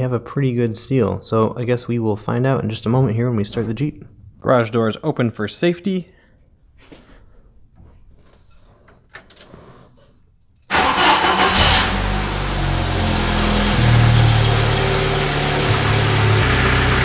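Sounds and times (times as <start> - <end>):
car engine cranking: 9.1 - 17.0
car engine idling: 10.7 - 17.0.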